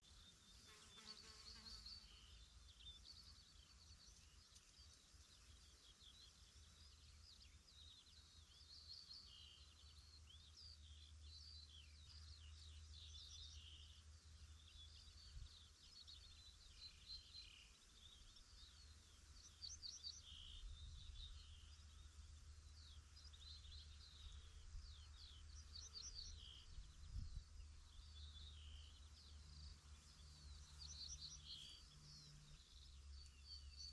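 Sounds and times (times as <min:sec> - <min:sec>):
songbirds chirping: 0:00.0 - 0:33.9.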